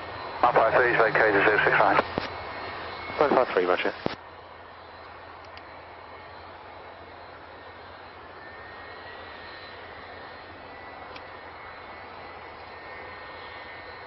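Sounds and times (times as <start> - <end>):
radio hiss: 0.4 - 2.4, 3.0 - 4.2.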